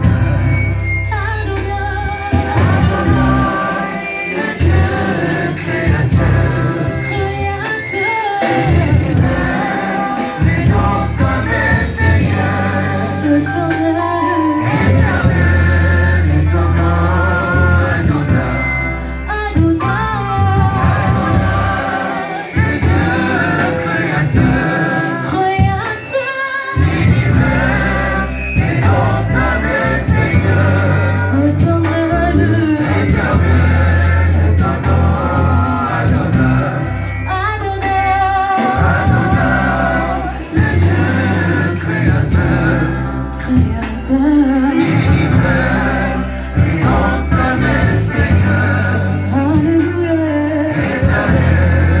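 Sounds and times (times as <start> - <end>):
gospel singers with a band: 0.0 - 52.0.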